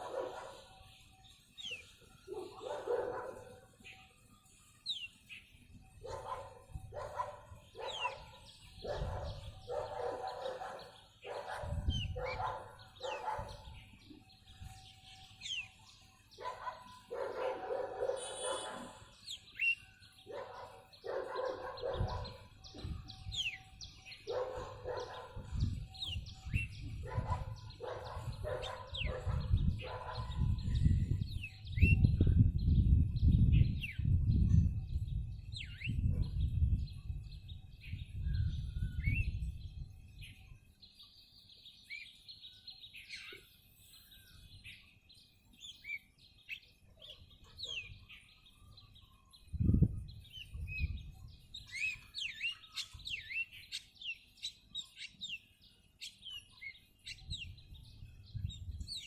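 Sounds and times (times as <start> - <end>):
dog barking: 0.0 - 0.7, 2.3 - 3.6, 6.0 - 13.7, 16.4 - 19.0, 20.3 - 22.4, 24.3 - 25.4, 27.0 - 30.5
small birds chirping: 0.0 - 59.0.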